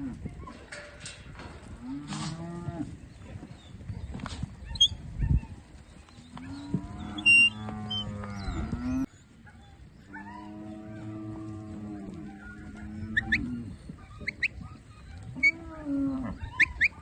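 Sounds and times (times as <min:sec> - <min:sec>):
livestock calling: 0:04.7 - 0:09.1, 0:09.7 - 0:17.0.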